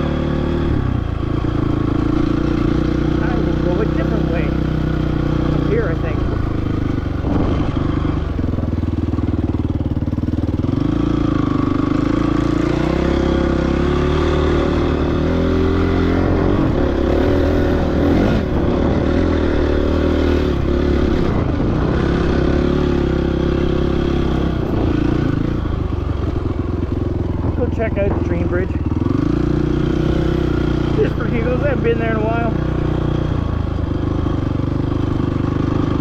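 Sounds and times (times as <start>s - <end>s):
motorcycle engine running: 0.0s - 36.0s
motorcycle clatter: 20.6s - 36.0s.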